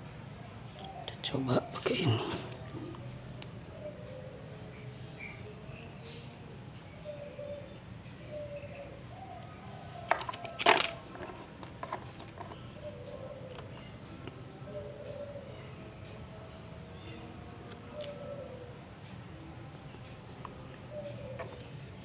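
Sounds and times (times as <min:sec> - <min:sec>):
handling clicks and knocks: 0:10.0 - 0:12.7.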